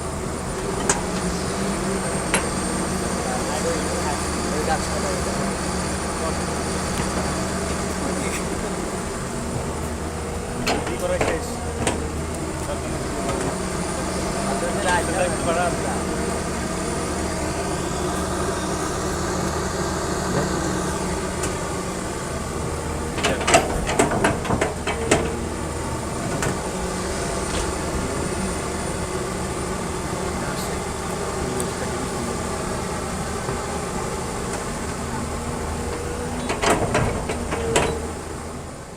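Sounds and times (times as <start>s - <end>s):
diesel engine running: 0.0s - 38.9s
metal clanks and knocks: 10.6s - 12.1s, 23.1s - 25.4s, 35.9s - 38.1s.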